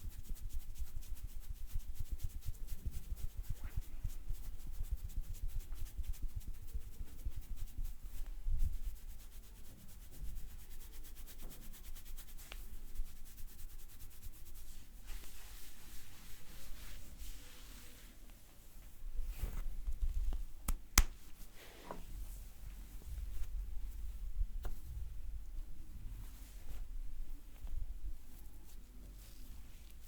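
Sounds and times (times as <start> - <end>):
rubbing on skin and hair: 0.2 - 18.1, 19.2 - 21.9.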